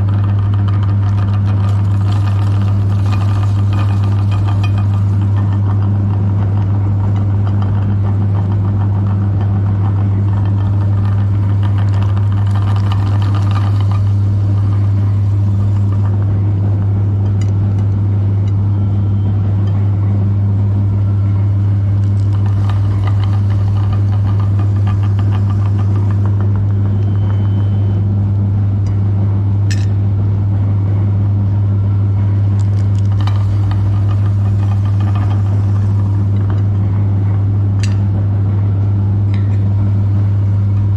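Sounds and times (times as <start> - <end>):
electric meat grinder running: 0.0 - 17.0, 21.8 - 27.8, 32.6 - 37.3.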